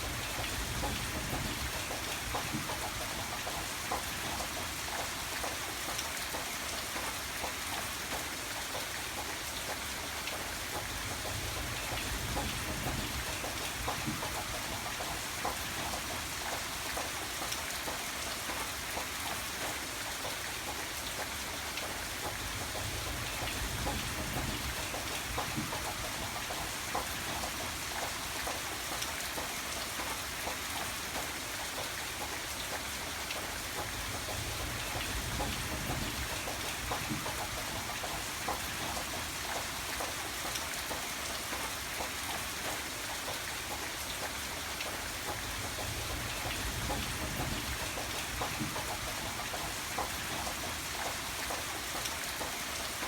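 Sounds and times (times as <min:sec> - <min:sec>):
steady rain patter: 0:00.0 - 0:53.0.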